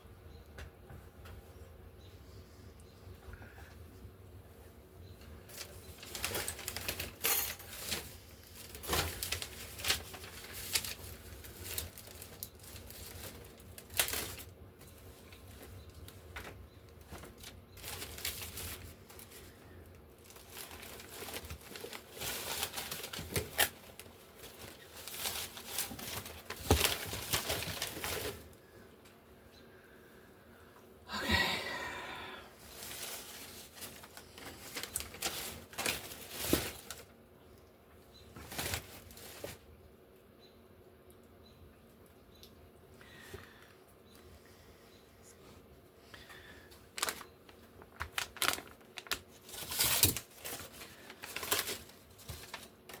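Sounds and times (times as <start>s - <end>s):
paper rustling and crinkling: 5.3s - 28.7s, 32.6s - 37.2s, 38.3s - 39.7s, 46.2s - 53.0s.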